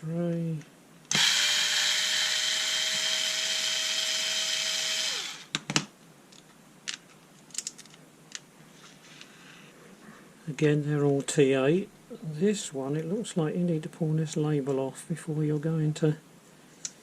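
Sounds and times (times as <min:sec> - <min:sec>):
cordless screwdriver whining: 0:01.1 - 0:05.5.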